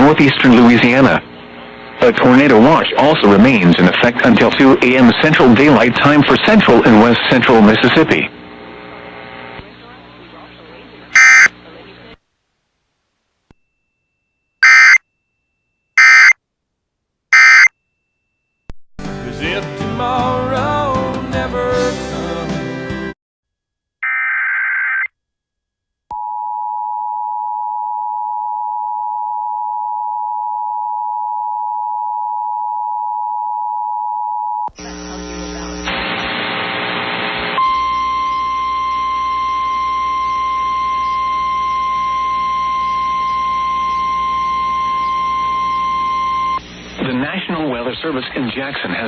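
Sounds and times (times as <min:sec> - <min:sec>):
radio hiss: 0:00.0 - 0:12.2, 0:34.8 - 0:38.5, 0:46.6 - 0:49.0
steady warning alarm tone: 0:11.2 - 0:11.5, 0:14.6 - 0:15.0, 0:16.0 - 0:16.4, 0:17.3 - 0:17.7
two-tone attention signal: 0:11.2 - 0:11.5, 0:14.6 - 0:15.0, 0:16.0 - 0:16.4, 0:17.4 - 0:17.7
digital header burst: 0:14.6 - 0:15.0, 0:16.0 - 0:16.4
country song: 0:19.0 - 0:23.2.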